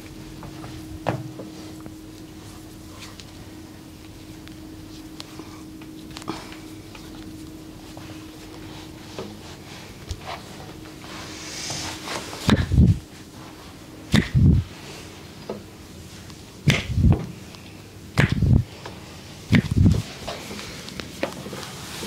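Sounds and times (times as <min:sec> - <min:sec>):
hands slapping body: 0:14.1 - 0:14.5, 0:16.7 - 0:17.1, 0:18.2 - 0:18.6, 0:19.5 - 0:20.0.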